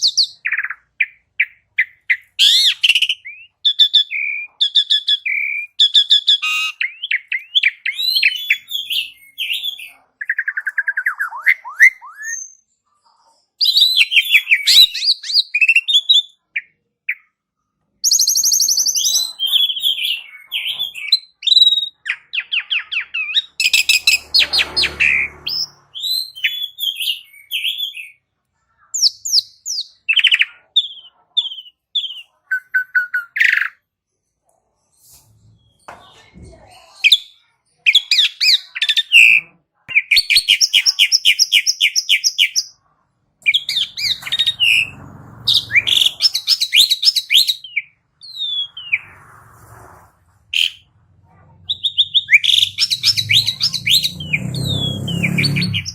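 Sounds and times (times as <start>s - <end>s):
starling singing: 0.0s - 12.6s, 18.1s - 28.2s, 29.0s - 33.8s, 37.1s - 42.8s, 43.4s - 49.2s, 50.5s - 51.0s, 51.6s - 55.9s
harsh rasping bird call: 19.0s - 28.2s, 43.5s - 49.3s, 51.7s - 55.9s.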